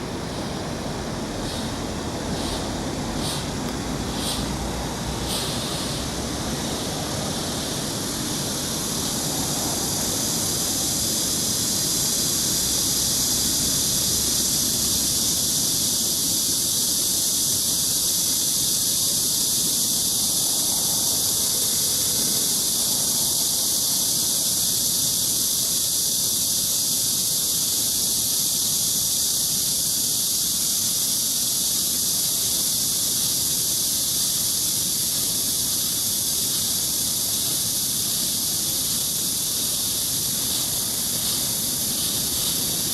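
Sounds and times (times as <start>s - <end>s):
smoke device hissing: 0.0s - 42.9s.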